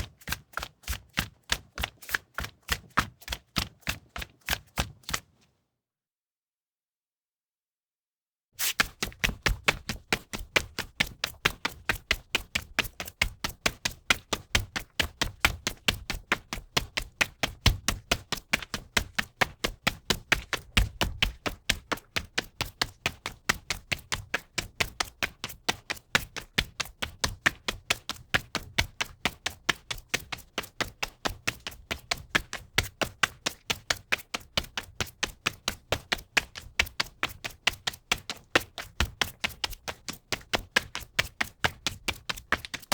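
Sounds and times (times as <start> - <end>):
running footsteps on linoleum: 8.6 - 42.9.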